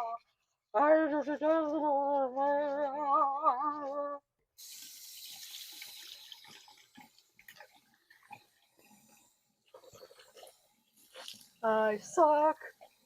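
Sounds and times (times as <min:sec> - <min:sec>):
tap water running into sink: 0:04.6 - 0:08.9
water dripping: 0:04.7 - 0:13.0.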